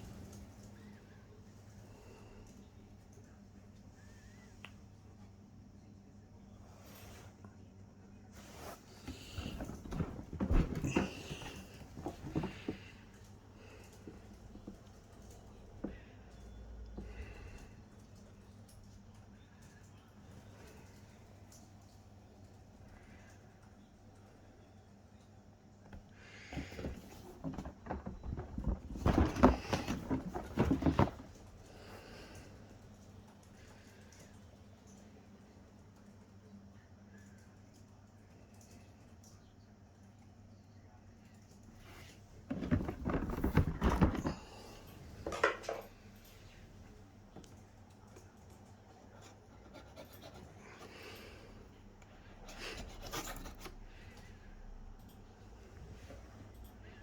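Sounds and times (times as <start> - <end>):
packaging rustling and scraping: 26.6 - 31.4, 42.5 - 44.6.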